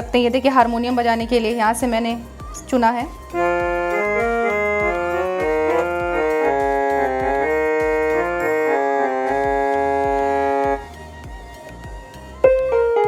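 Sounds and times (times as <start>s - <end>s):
steady low beat: 0.0s - 13.0s
keyboard harmonium melody: 3.3s - 10.9s, 12.4s - 13.0s.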